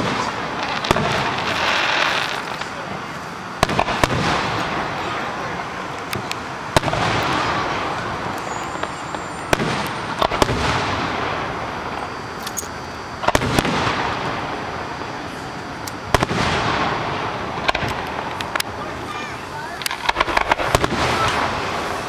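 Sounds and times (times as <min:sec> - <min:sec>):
fireworks bursting: 0:00.0 - 0:22.0
fireworks crackle: 0:00.0 - 0:22.0.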